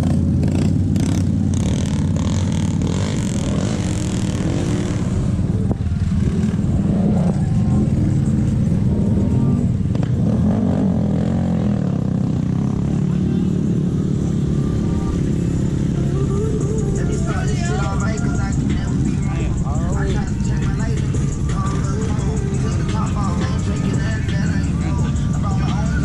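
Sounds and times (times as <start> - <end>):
vehicle engine running: 0.0 - 26.0
faint voices: 5.3 - 9.9, 12.3 - 26.0.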